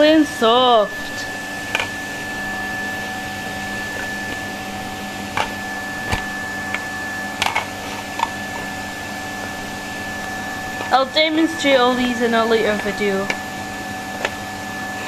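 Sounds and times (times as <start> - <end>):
vacuum cleaner whining: 0.0 - 15.0.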